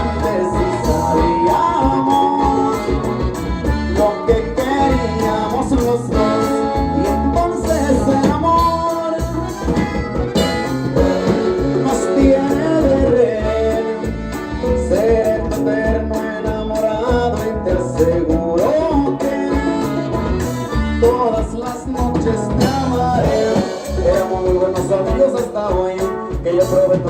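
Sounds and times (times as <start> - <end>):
live latin band music: 0.0 - 27.0.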